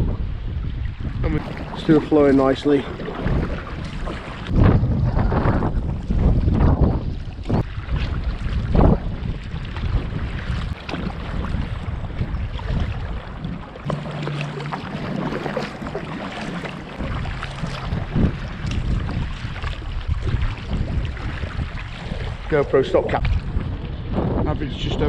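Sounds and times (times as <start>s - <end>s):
wind buffeting microphone: 0.0s - 25.0s
water splashing and trickling: 0.4s - 25.0s
steady low hum: 13.0s - 19.7s.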